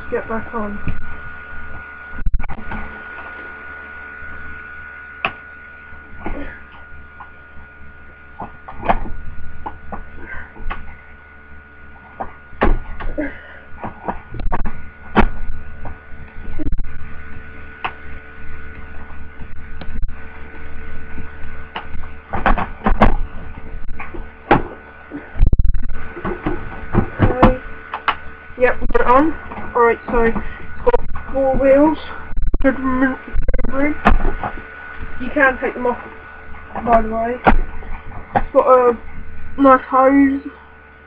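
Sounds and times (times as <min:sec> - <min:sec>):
heavy thump: 0:12.1 - 0:13.2, 0:21.8 - 0:24.8.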